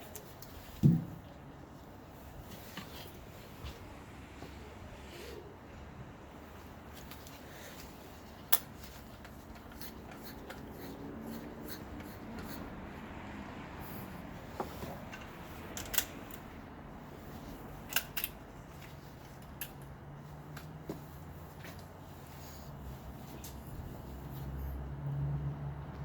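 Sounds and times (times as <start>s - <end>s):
light handling noises: 0.0s - 4.6s, 6.4s - 12.7s, 13.8s - 24.8s.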